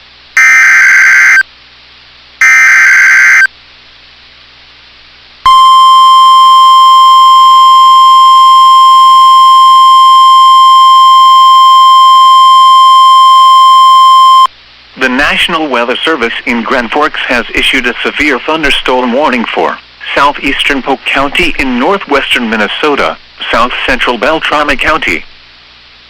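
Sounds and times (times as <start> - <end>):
steady warning alarm tone: 0.4 - 1.4, 2.4 - 3.5
harsh digital data burst: 2.4 - 3.5.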